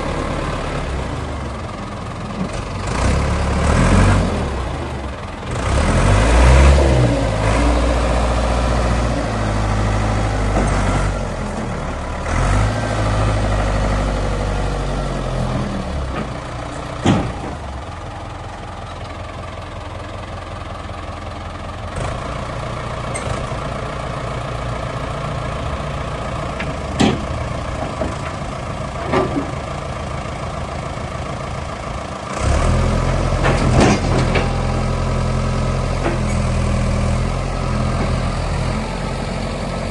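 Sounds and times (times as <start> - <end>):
diesel engine revving and idling: 0.0 - 39.9
sharp knocks: 17.0 - 17.6.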